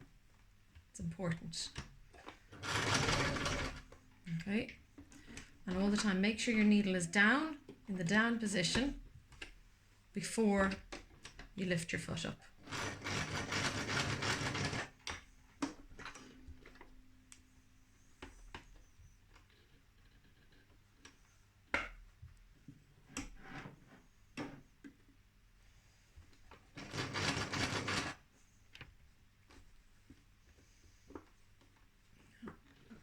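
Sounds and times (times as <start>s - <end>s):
sewing machine stitching: 2.5s - 4.0s, 12.6s - 15.2s, 26.8s - 28.2s.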